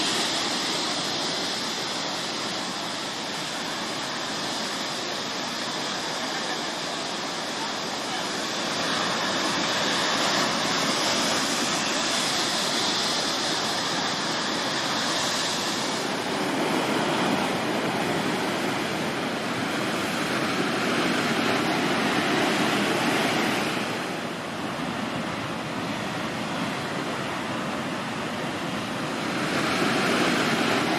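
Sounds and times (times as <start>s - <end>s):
surf breaking on rocks: 0.0s - 2.6s.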